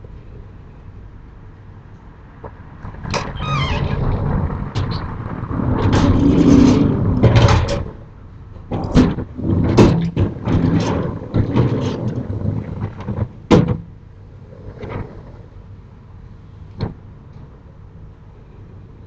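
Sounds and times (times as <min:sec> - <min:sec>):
storm shutters sliding and rattling: 0:02.8 - 0:14.0
shutters knocking: 0:03.1 - 0:06.4.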